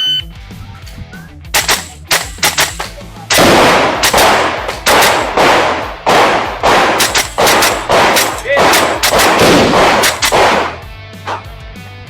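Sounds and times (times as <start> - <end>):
start beep: 0.0 - 0.6
airsoft rifle shots: 1.5 - 11.4
loud bangs with ringing tail: 1.6 - 10.9.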